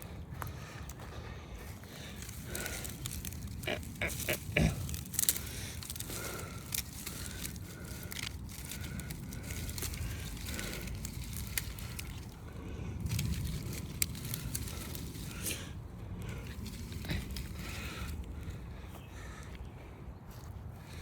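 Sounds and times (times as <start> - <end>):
low wind rumble: 0.0 - 21.0
rustling handling noise: 1.9 - 18.3.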